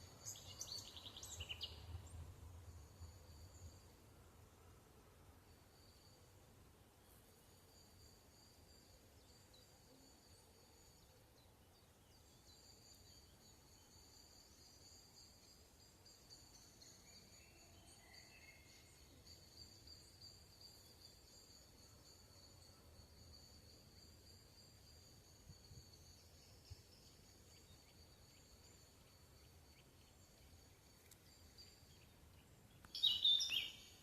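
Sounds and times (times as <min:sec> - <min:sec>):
high-pitched insect trill: 0:07.3 - 0:11.2, 0:12.2 - 0:32.0, 0:32.8 - 0:34.0
bird chirps: 0:26.2 - 0:34.0.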